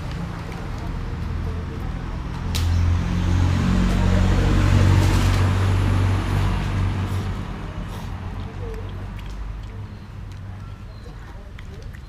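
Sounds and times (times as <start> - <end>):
vehicle passing close by: 2.0 - 9.7.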